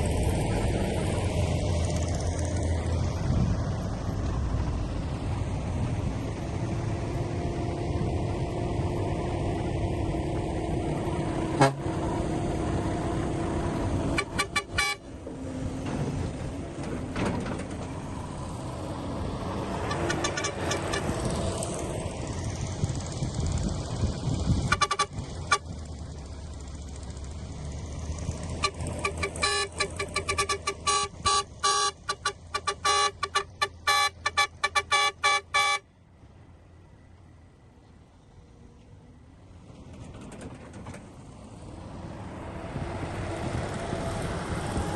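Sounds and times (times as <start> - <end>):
heavy vehicle engine running: 0.0 - 44.9
vehicle horn short toots: 11.6 - 11.9, 14.1 - 15.0, 24.6 - 25.7, 28.6 - 35.9.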